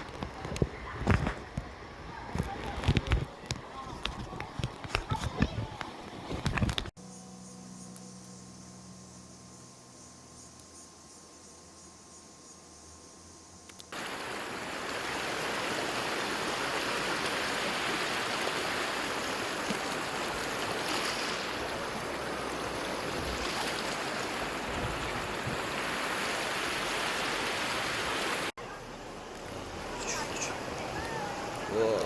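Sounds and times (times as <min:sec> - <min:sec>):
water rushing: 0:13.9 - 0:32.0.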